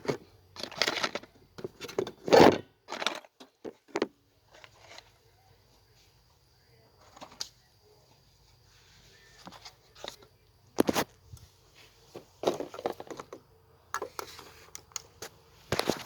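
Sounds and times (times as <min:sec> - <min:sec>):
parts knocking and clattering: 0:00.0 - 0:05.1, 0:12.1 - 0:14.3.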